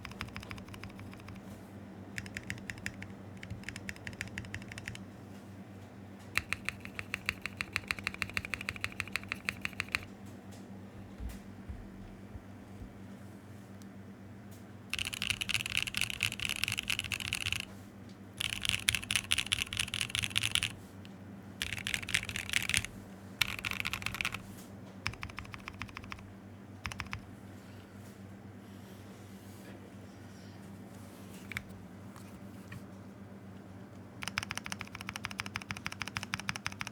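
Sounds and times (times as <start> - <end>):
fast typing on mechanical keyboard: 0.0 - 1.5, 2.2 - 5.0, 6.4 - 10.1, 14.9 - 17.7, 18.4 - 20.8, 21.6 - 26.2, 26.8 - 27.3, 34.2 - 36.9.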